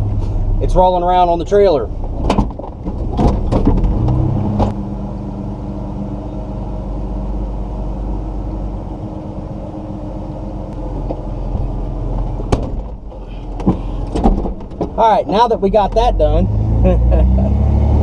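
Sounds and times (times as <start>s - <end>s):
vehicle engine idling: 4.7s - 17.2s.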